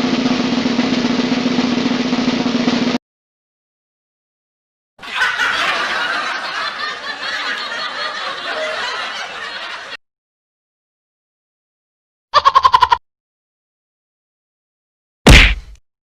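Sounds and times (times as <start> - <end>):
laughter sound effect: 5.0 - 10.0, 12.4 - 13.0.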